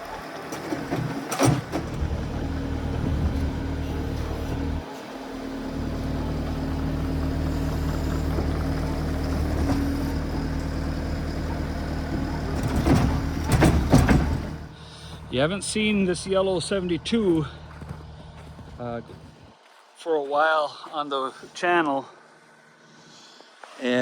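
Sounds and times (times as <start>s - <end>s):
diesel engine running: 0.0s - 19.8s
loud scraping knocks: 12.1s - 14.7s.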